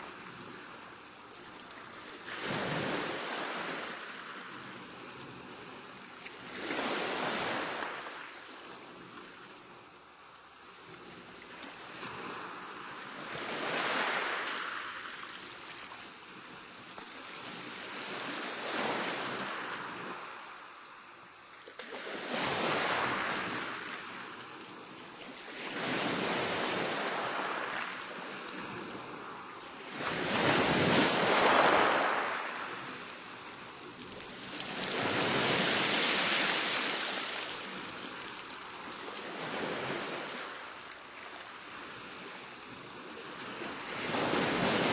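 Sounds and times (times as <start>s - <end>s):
waves breaking: 0.0s - 8.5s, 21.6s - 44.9s.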